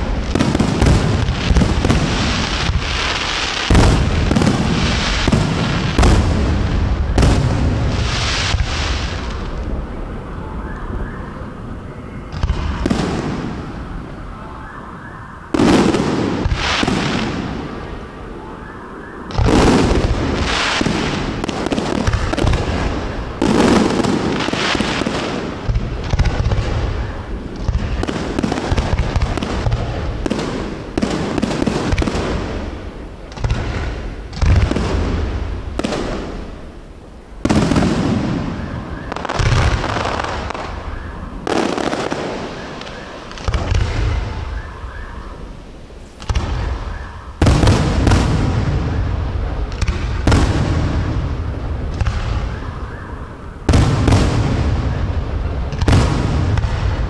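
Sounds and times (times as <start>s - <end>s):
firework shells booming: 0.0s - 9.6s, 19.3s - 36.7s, 37.4s - 44.9s, 46.2s - 57.0s
firework crackling: 0.0s - 14.4s, 15.5s - 18.4s, 19.2s - 57.0s.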